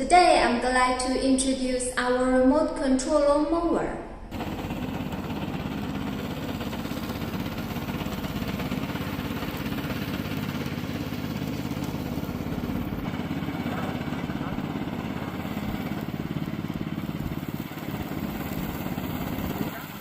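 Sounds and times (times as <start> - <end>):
lawn mower engine running: 4.3 - 20.0.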